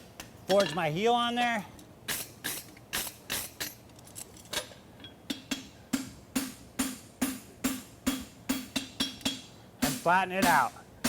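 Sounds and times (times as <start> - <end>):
hammer striking steel on anvil: 5.3 - 10.8.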